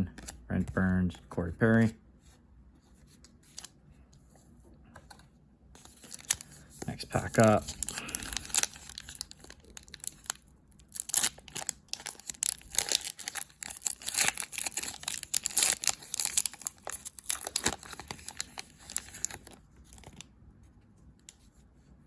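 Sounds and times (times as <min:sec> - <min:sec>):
card pack wrapper crinkling and tearing: 0:05.8 - 0:20.3.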